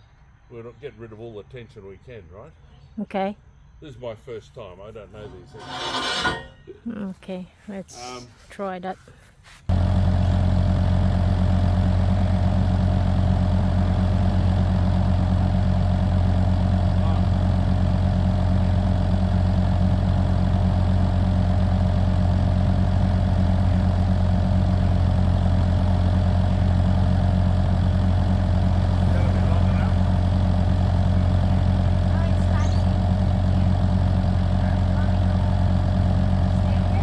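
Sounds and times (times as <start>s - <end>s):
diesel engine idling: 9.7s - 37.0s.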